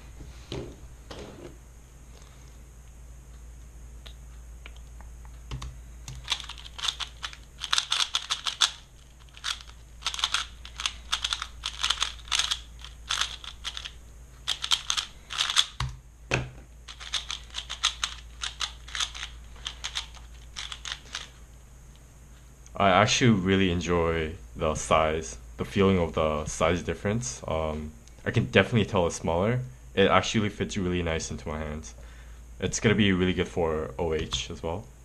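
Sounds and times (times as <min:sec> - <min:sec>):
speedcube clicking: 0:05.5 - 0:16.0, 0:16.9 - 0:21.3.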